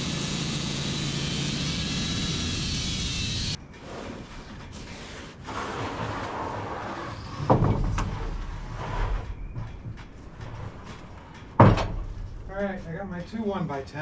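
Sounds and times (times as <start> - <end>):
wood scraping and knocking on wood: 3.6 - 13.1
heavy thud of wood: 11.6 - 12.4.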